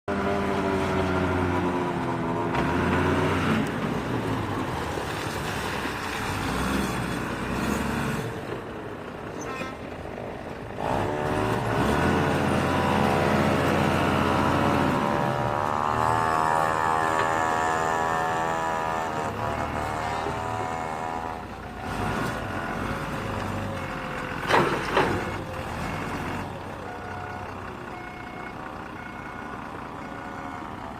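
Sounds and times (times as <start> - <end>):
forklift diesel engine running: 6.6 - 30.9
reverse alarm beeps: 26.9 - 30.8.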